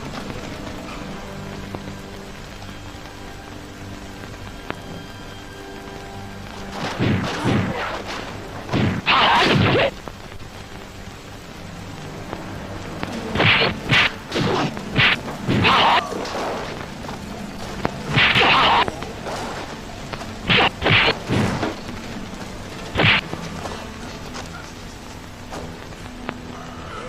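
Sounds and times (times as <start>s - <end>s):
swishing crack: 6.8s - 10.0s, 13.3s - 16.9s, 18.0s - 19.8s, 20.4s - 21.8s, 23.0s - 23.3s
punch and kick hits: 8.7s - 9.9s, 13.4s - 16.0s, 18.1s - 18.8s, 20.5s - 21.6s, 23.0s - 23.2s.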